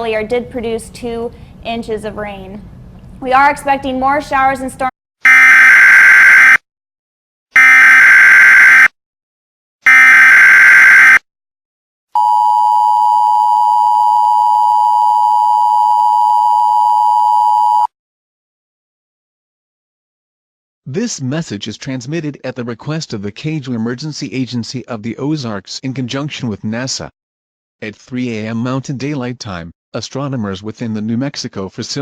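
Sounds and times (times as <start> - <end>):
two-tone alert signal: 5.3 - 6.6, 7.6 - 8.9, 9.9 - 11.2
data tone bursts: 7.6 - 8.9, 9.9 - 11.2.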